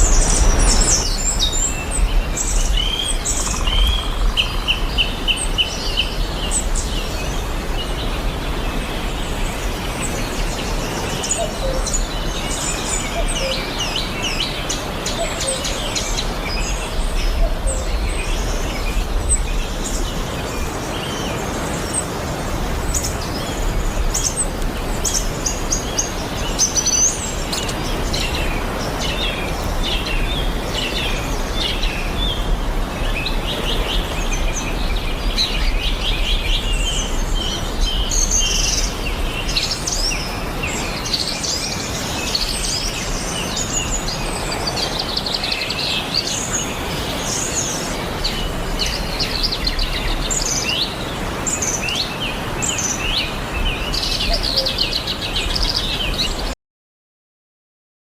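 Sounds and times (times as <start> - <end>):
steady low rumble: 0.0 - 4.7
small birds chirping: 0.0 - 56.5.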